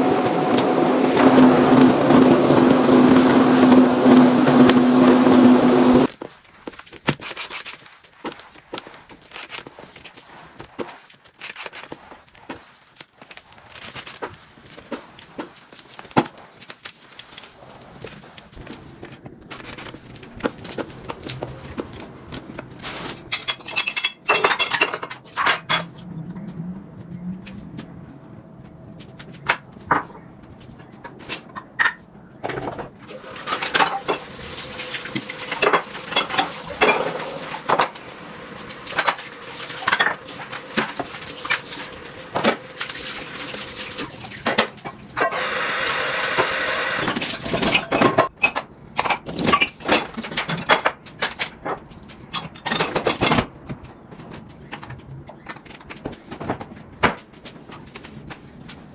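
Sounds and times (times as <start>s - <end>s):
dishes clinking and clattering: 23.3s - 26.0s, 31.3s - 38.0s, 47.1s - 53.5s.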